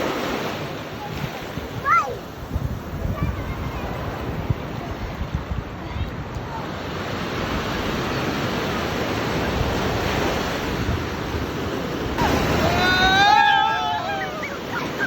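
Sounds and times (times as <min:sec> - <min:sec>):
long rising wavering call: 0:12.2 - 0:15.0.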